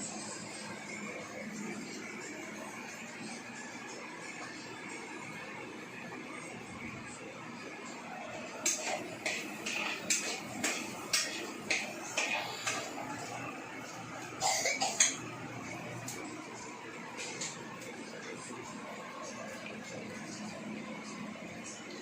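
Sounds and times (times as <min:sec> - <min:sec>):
dishes and utensils clinking: 0:08.6 - 0:13.4.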